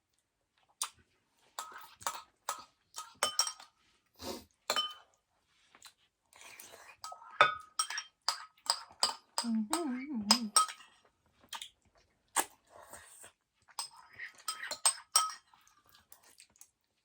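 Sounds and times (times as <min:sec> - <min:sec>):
person humming: 0:09.4 - 0:10.6
spoon scraping a bowl: 0:13.8 - 0:15.6.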